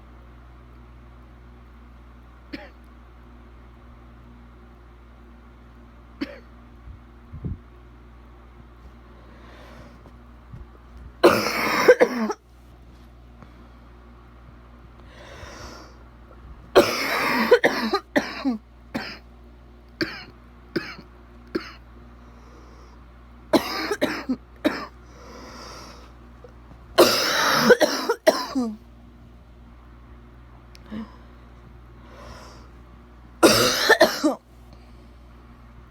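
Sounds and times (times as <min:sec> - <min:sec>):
person coughing wetly: 0:02.5 - 0:02.8, 0:06.2 - 0:06.5, 0:11.2 - 0:12.4, 0:16.8 - 0:19.2, 0:20.0 - 0:21.8, 0:23.5 - 0:24.9, 0:27.0 - 0:28.8, 0:33.4 - 0:34.4.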